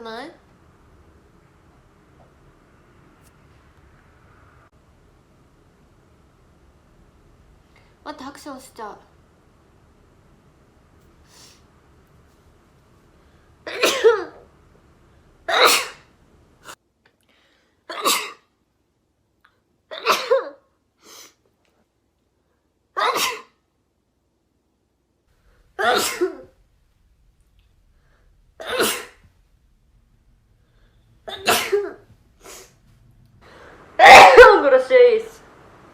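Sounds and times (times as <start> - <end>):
person sneezing: 13.7 - 14.4, 15.5 - 16.8, 17.9 - 18.4, 23.0 - 23.6, 25.8 - 26.5, 28.6 - 29.3, 31.3 - 32.8, 34.0 - 34.5.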